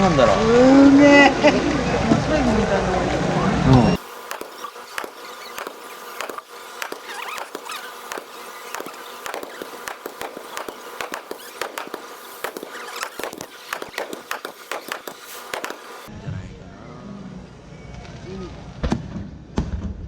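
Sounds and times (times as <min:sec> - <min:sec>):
crowd footsteps: 0:00.0 - 0:16.1
steady background haze: 0:01.1 - 0:16.1.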